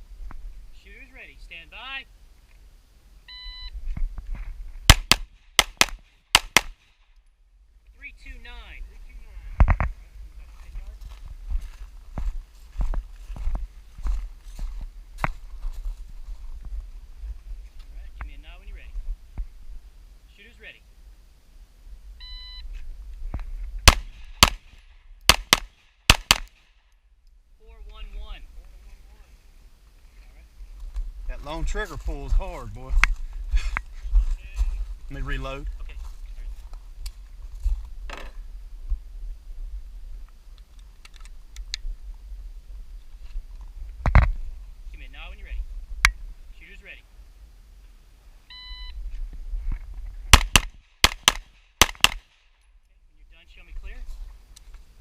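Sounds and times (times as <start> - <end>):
pistol shots: 4.9 - 6.8, 23.8 - 26.6, 50.4 - 52.4.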